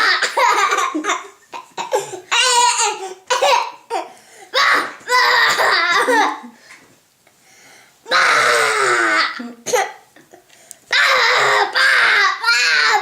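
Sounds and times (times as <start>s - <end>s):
young boy laughing: 0.0s - 1.9s.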